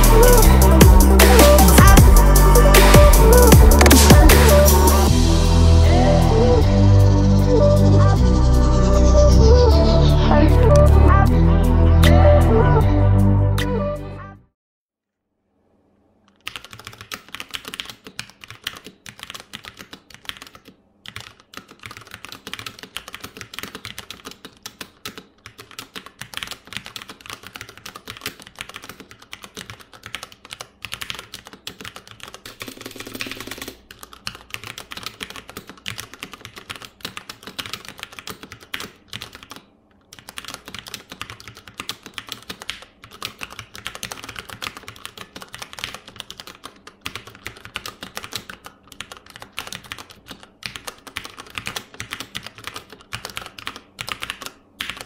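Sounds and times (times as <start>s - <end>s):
fast typing on mechanical keyboard: 16.3s - 55.0s.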